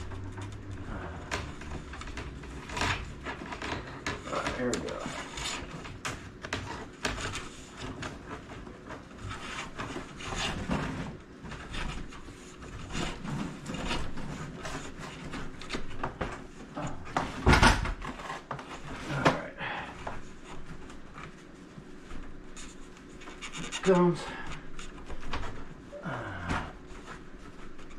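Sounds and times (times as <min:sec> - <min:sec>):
cable rubbing and scraping: 0:00.0 - 0:08.3.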